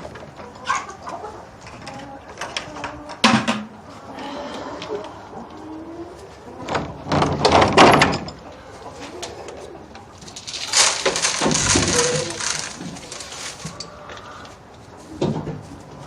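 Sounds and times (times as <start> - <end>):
chickens calling softly: 0.2 - 3.2, 8.4 - 15.8
feed pouring into buckets: 10.2 - 13.8.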